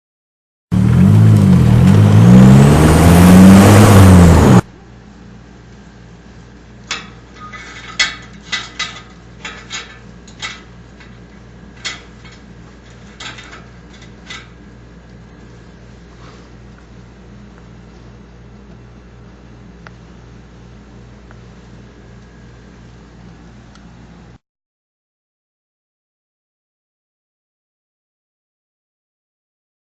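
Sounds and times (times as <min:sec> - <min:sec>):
car engine revving: 0:00.7 - 0:04.7
quiet steady hum: 0:04.7 - 0:24.4.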